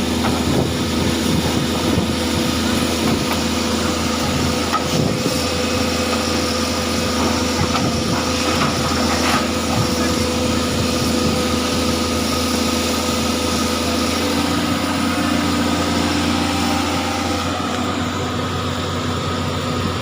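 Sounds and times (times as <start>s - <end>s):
heavy machinery engine running: 0.0s - 20.0s.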